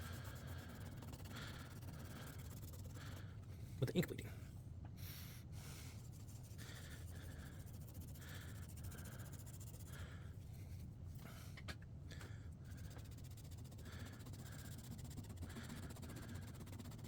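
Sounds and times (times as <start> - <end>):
damp towel rubbing on paper: 12.8 - 17.0.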